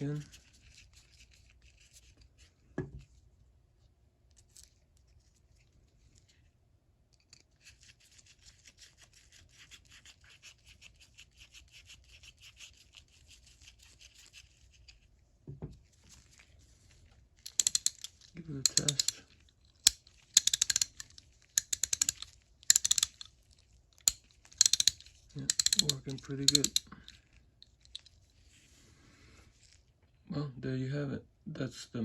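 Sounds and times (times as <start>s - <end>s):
soft knock: 15.4s - 15.8s
scratchy ticking of screwdriver: 17.5s - 19.2s, 19.8s - 23.3s, 24.0s - 26.9s.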